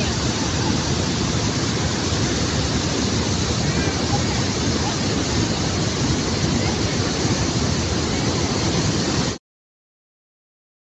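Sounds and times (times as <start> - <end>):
waterfall roaring: 0.0 - 9.4.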